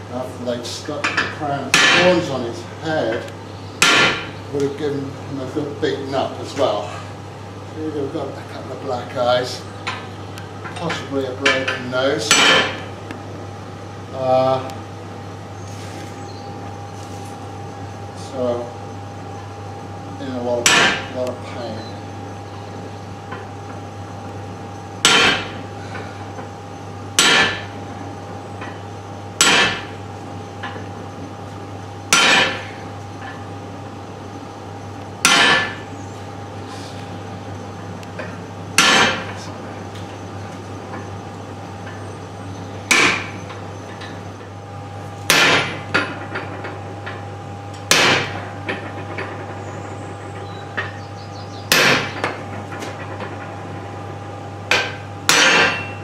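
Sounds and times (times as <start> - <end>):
steady hum: 0.0 - 56.0
hammer striking hot steel: 1.1 - 2.3, 3.8 - 4.4, 10.8 - 12.9, 20.6 - 21.2, 25.0 - 25.6, 27.2 - 27.8, 29.4 - 30.0, 32.1 - 33.4, 35.2 - 35.8, 38.2 - 39.4, 42.9 - 43.4, 45.3 - 46.2, 47.8 - 48.8, 51.7 - 53.0, 54.7 - 56.0.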